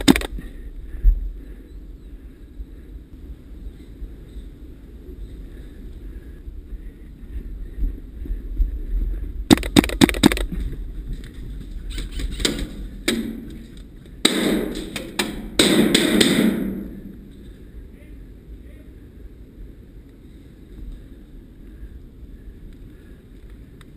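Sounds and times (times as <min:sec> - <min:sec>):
airsoft rifle shots: 0:00.0 - 0:00.4, 0:09.5 - 0:10.5, 0:12.4 - 0:13.6, 0:14.2 - 0:17.1
rustling noise bursts: 0:08.6 - 0:14.2.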